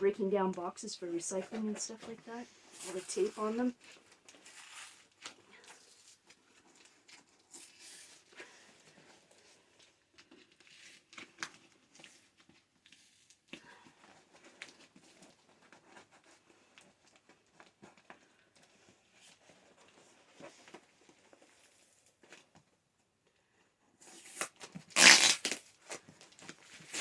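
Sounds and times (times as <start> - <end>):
packaging tearing and crinkling: 24.0 - 27.0.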